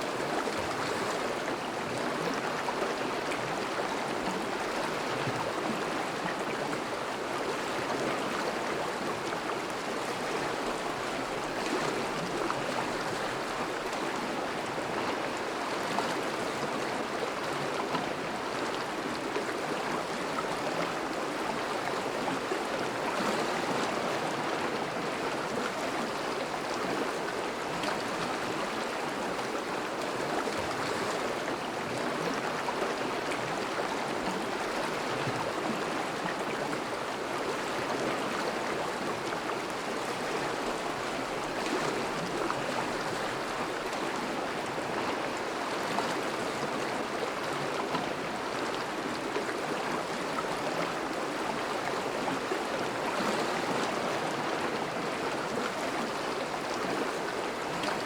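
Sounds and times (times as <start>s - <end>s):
river rushing and babbling: 0.0s - 58.0s.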